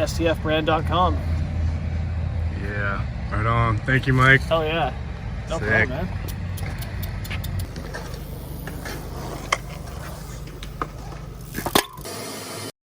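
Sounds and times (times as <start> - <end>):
low background rumble: 0.0 - 11.7.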